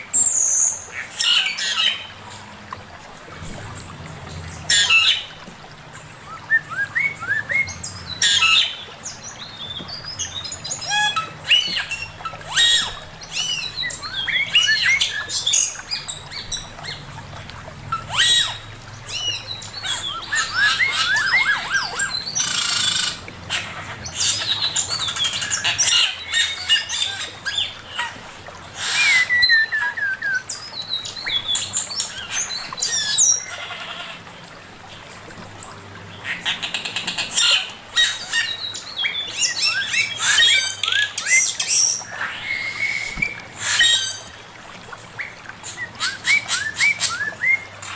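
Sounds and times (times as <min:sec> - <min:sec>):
bird singing whistles and trills: 0:06.2 - 0:17.0, 0:28.8 - 0:33.4, 0:45.9 - 0:47.9.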